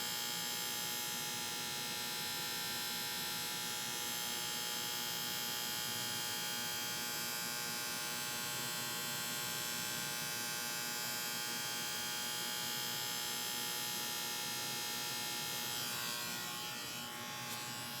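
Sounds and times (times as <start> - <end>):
air conditioner unit buzzing: 11.2 - 18.0.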